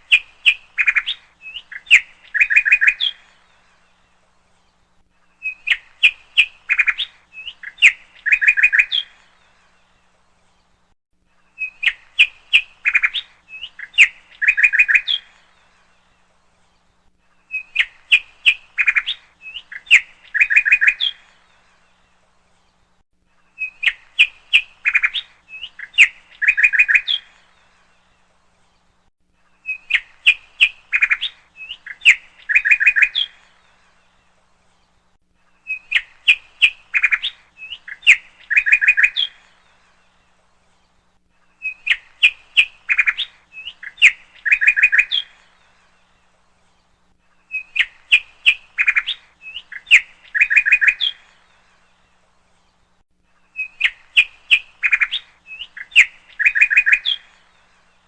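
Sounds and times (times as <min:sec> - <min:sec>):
bird chirping with a trill: 0:00.0 - 0:03.4, 0:05.4 - 0:09.4, 0:11.6 - 0:15.4, 0:17.5 - 0:21.4, 0:23.5 - 0:27.5, 0:35.6 - 0:39.6, 0:41.5 - 0:46.0, 0:47.4 - 0:51.5, 0:53.5 - 0:57.6.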